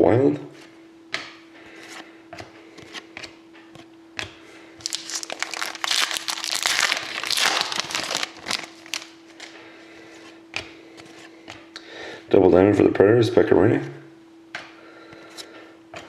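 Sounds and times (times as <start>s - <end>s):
card pack wrapper crinkling: 4.8s - 9.5s.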